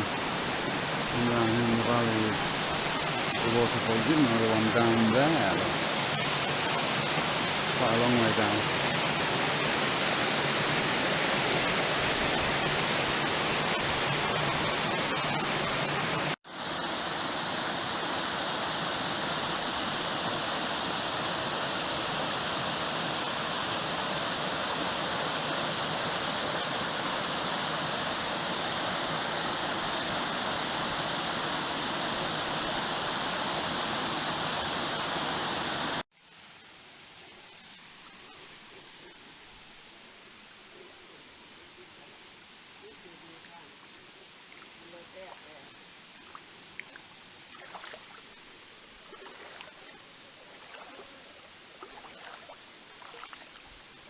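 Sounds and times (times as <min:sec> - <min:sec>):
waterfall rushing: 0:00.0 - 0:36.0.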